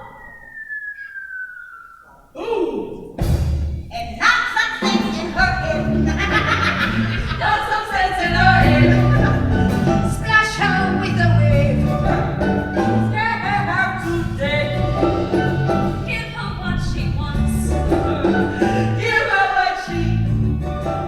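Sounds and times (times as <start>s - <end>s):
instrumental accompaniment: 4.8s - 21.0s.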